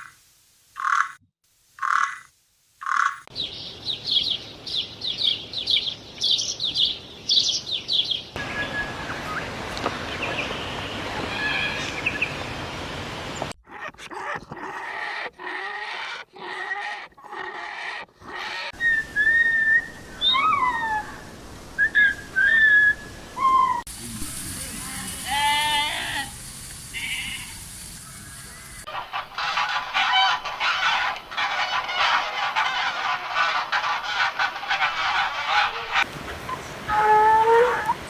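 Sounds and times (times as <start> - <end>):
whistled calls gliding: 5.8 - 9.6, 18.7 - 21.2, 21.8 - 23.9
wavering bleat-like call: 25.2 - 26.3, 27.0 - 27.5
farm animal calls: 28.8 - 36.1.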